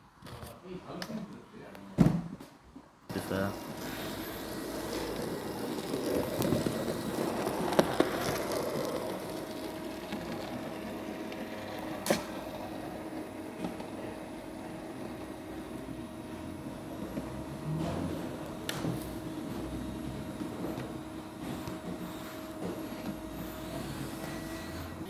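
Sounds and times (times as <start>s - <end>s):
model train rolling rumble: 3.1s - 13.4s.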